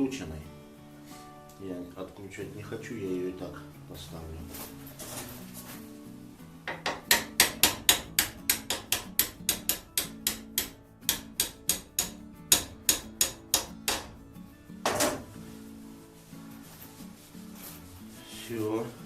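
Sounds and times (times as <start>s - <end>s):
hammer tapping on metal: 6.7s - 14.2s.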